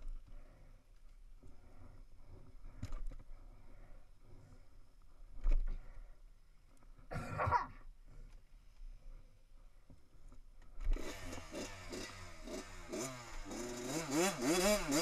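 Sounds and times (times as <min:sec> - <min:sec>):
person coughing: 0:07.1 - 0:07.8
dirt bike engine revving: 0:10.9 - 0:15.0.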